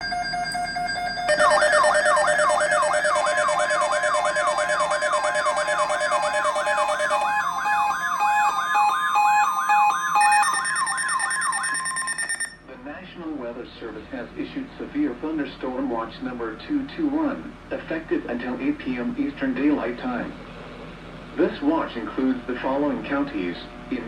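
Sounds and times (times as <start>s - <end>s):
falling siren-like sweep: 0.0s - 12.6s
short evenly spaced beeps: 0.0s - 12.6s
steady high tones: 0.0s - 12.6s.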